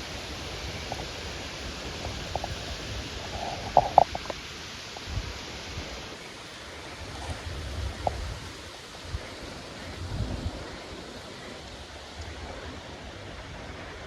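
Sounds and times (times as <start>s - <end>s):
rain hissing: 0.0s - 14.0s
wind rumbling on microphone: 0.0s - 14.0s.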